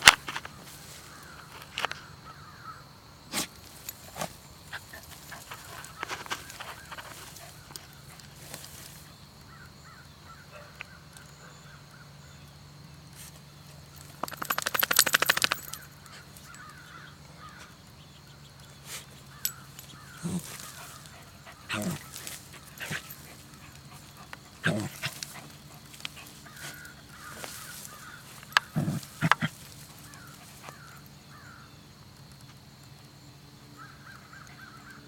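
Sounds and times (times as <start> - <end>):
dog making low noises: 20.0 - 30.9.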